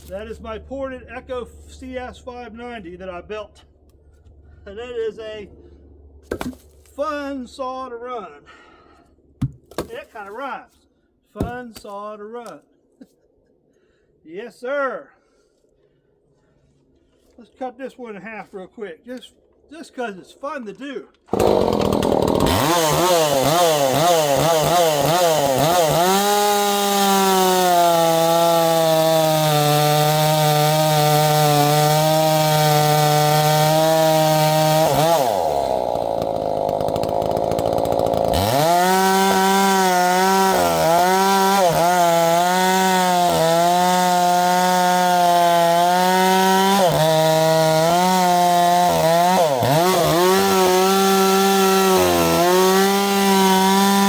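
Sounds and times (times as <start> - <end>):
chainsaw revving and cutting log: 21.3 - 54.0.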